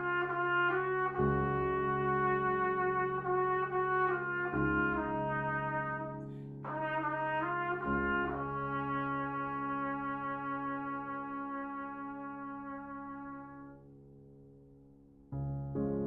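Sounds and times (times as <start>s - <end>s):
brass instrument slow melody: 0.0s - 14.0s.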